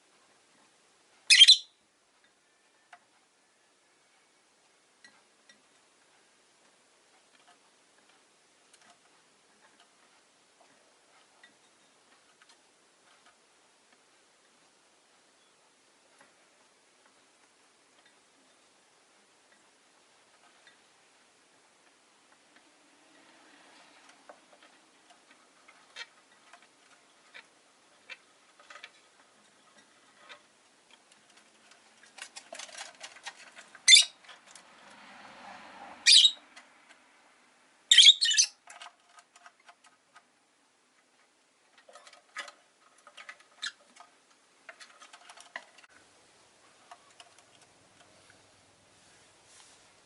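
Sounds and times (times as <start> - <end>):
shrill bird calls: 1.3 - 1.8, 33.9 - 34.2, 36.1 - 36.4, 37.9 - 38.6
birds ticking and scratching: 5.0 - 15.3, 19.4 - 37.1, 37.9 - 48.6.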